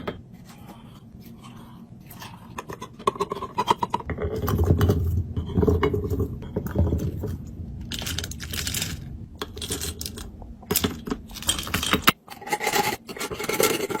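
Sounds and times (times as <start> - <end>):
low hum: 0.0 - 12.2
packages clicking and clinking: 7.9 - 12.2.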